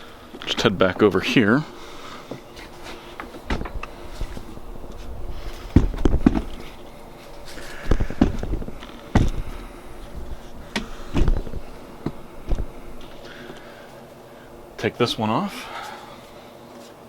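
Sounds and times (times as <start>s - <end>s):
knocks and clunks: 3.2s - 3.9s, 5.7s - 6.6s, 7.9s - 9.6s, 10.2s - 12.7s.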